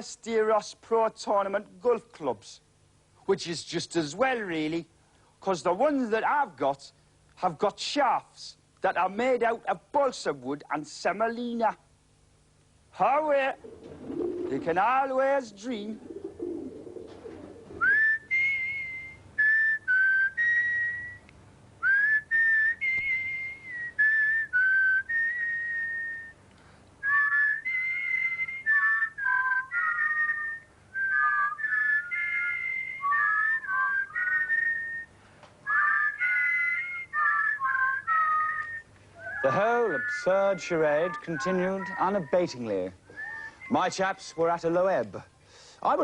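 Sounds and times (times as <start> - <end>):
person whistling a tune: 17.8 - 26.4, 27.0 - 42.3, 43.0 - 43.8.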